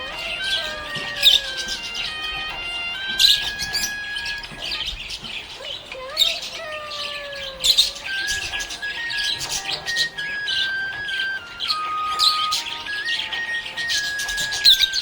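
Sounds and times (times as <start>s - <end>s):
background music: 0.0s - 15.0s
budgerigars chirping and warbling: 0.0s - 15.0s.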